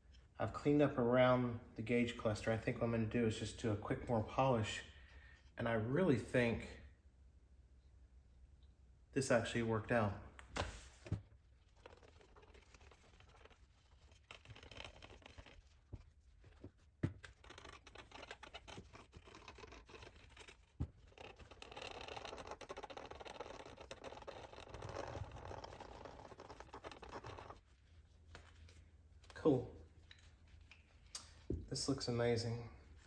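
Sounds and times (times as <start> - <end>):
cloth rubbing plastic: 10.6 - 32.1.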